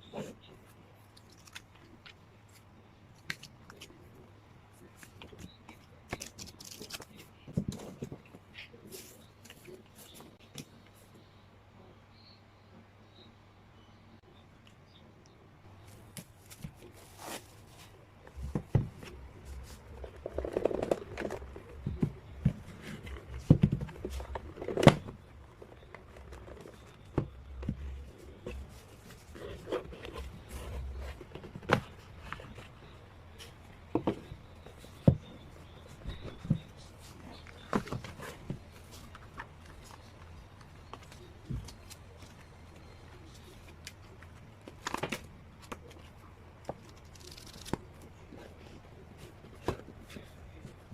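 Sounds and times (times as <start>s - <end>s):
rustling: 15.7s - 50.9s.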